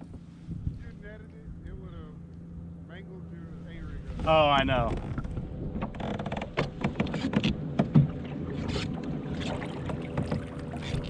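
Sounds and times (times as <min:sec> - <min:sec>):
faint steady hum: 0:00.0 - 0:11.0
knocks and clatter on kayak: 0:04.2 - 0:11.0.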